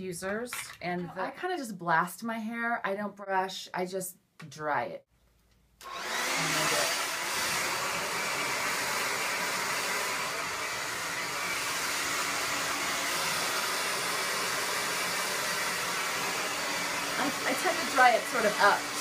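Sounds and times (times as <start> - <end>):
hair dryer blowing: 5.8 - 19.0.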